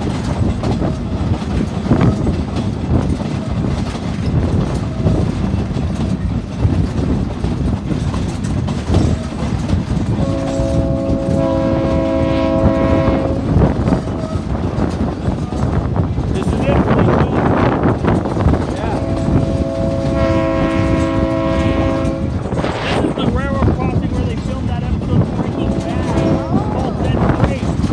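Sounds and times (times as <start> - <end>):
train rumbling and clattering on rails: 0.0 - 27.9
locomotive horn blast: 10.2 - 14.4, 18.7 - 24.3, 25.1 - 27.9.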